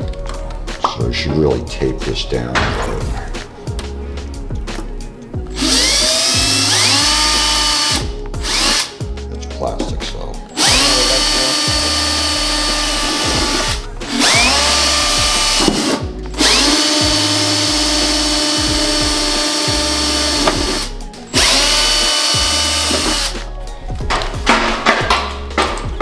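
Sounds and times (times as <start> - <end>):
power drill boring through plastic: 5.5 - 9.0, 10.5 - 23.4.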